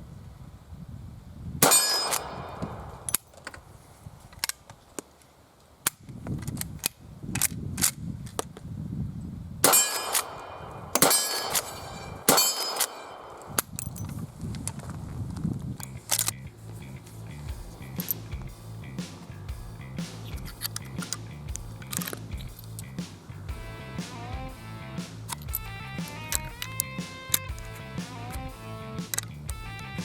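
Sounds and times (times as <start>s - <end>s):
steel target ringing: 1.6s - 3.1s, 9.6s - 13.6s
rifle shots: 1.6s - 3.3s, 9.6s - 13.8s.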